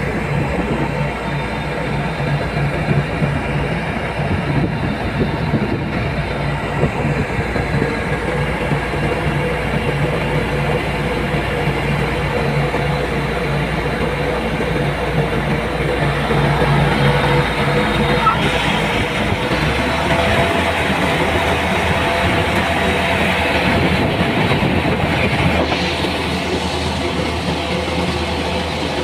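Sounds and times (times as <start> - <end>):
machine engine droning: 0.0 - 29.0.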